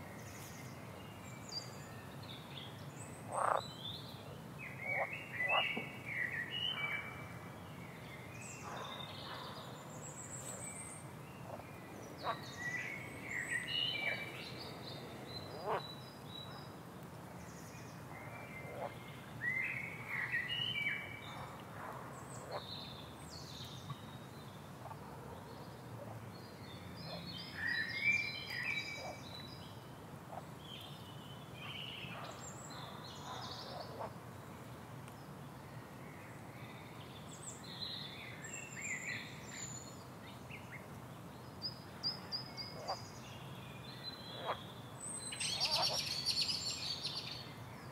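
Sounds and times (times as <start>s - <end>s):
background hiss: 0.0s - 47.9s
frog calls: 3.3s - 3.6s.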